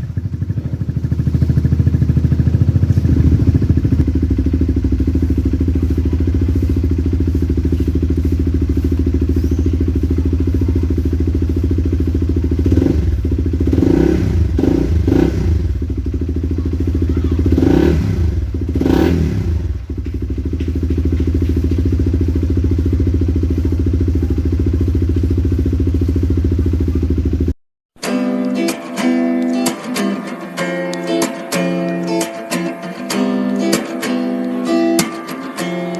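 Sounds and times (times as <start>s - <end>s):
motorcycle engine idling and revving: 0.0s - 27.6s
acoustic guitar music: 28.0s - 35.9s.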